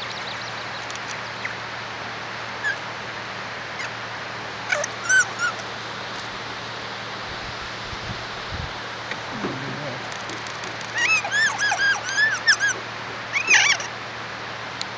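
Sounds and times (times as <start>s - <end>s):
parrot squealing calls: 2.6s - 2.9s, 3.7s - 4.0s, 4.6s - 5.6s, 10.9s - 14.0s.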